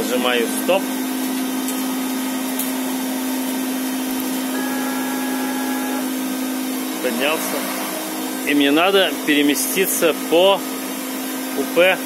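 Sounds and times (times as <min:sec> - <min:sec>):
router spindle humming: 0:01.8 - 0:11.3
faint high whine: 0:04.5 - 0:07.7.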